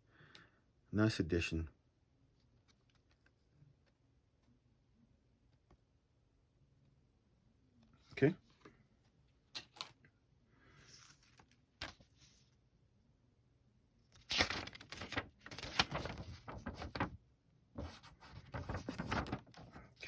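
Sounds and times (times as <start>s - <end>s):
paper rustling and crinkling: 2.6s - 3.4s, 9.5s - 10.0s, 10.8s - 12.5s, 14.1s - 17.2s, 17.8s - 20.0s.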